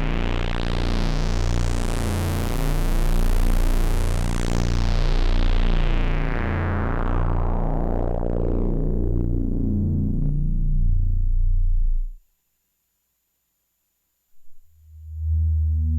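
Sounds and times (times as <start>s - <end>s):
analog synthesizer drone: 4.3s - 12.2s, 14.4s - 15.9s.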